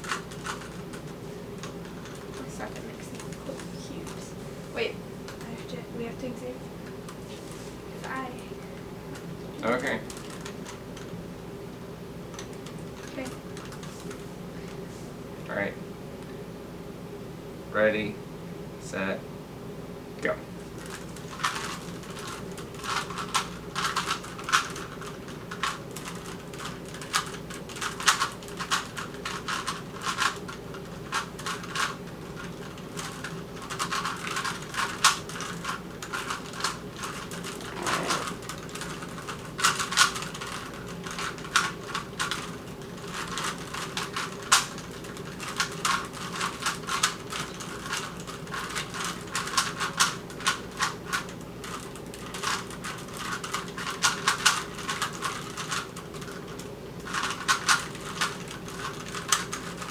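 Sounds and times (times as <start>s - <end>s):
plastic puzzle cubes clicking: 20.8s - 59.9s.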